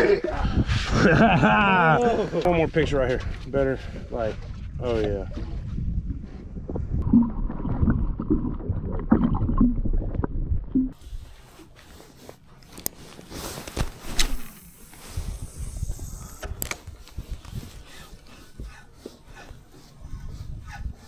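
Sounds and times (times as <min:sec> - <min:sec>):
wind rumbling on microphone: 0:00.0 - 0:11.5, 0:14.2 - 0:18.8, 0:19.4 - 0:21.0
water sounds: 0:06.7 - 0:11.0.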